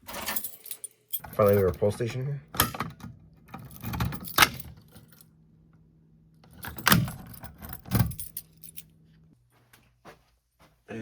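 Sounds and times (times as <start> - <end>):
keys jangling: 0.0 - 2.0, 3.5 - 5.3, 6.4 - 8.9.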